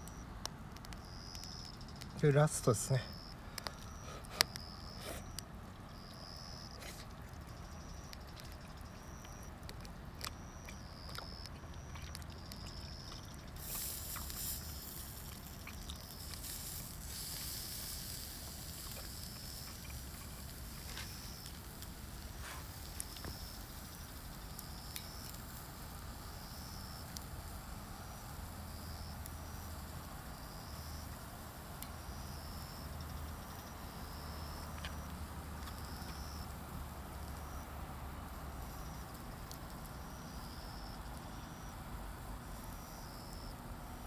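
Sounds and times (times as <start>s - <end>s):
wood fire crackling: 0.0s - 41.6s
insect chirping in high pulses: 1.0s - 9.6s, 10.3s - 27.1s, 32.0s - 43.6s
hiss: 13.6s - 15.4s, 16.3s - 22.9s.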